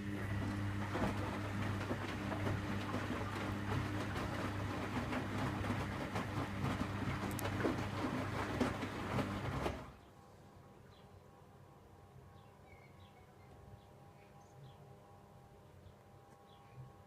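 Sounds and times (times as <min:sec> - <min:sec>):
water rushing through machine: 0:00.0 - 0:10.0
washing machine electrical hum: 0:00.0 - 0:17.0.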